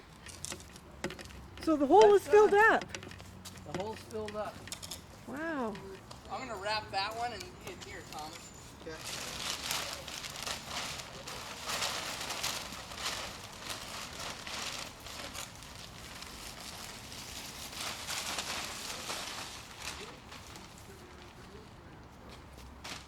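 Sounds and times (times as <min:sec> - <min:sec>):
plastic sheet rustling and crackling: 0:06.3 - 0:23.0.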